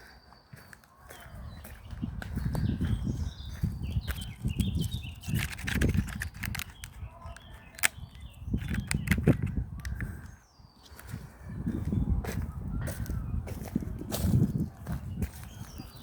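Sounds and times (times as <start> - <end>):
birds chirping: 0.0 - 16.0
footsteps on woodland path: 0.0 - 16.0.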